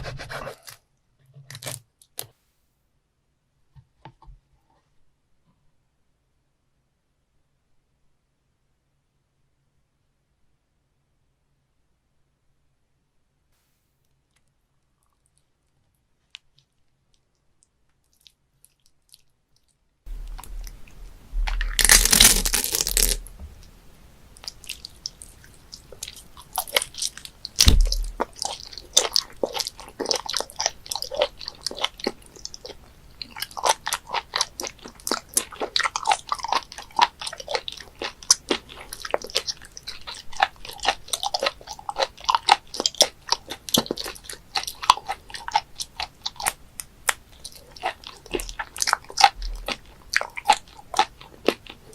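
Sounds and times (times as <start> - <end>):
wet chewing and crunching: 18.0 - 51.9.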